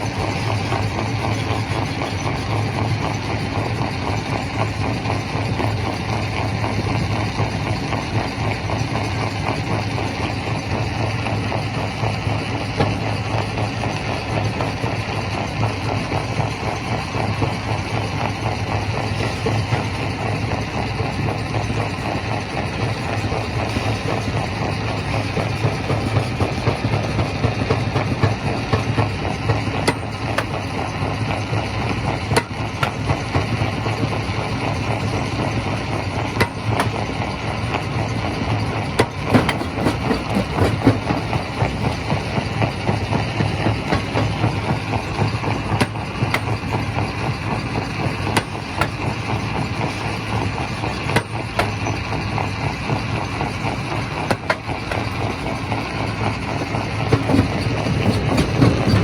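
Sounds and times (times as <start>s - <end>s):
rock crusher hum: 0.0s - 59.0s.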